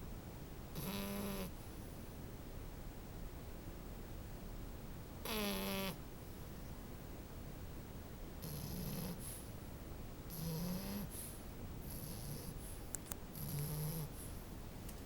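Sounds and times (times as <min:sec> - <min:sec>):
puppy snoring: 0:00.7 - 0:01.6, 0:05.2 - 0:06.0, 0:08.4 - 0:09.5, 0:10.3 - 0:14.4.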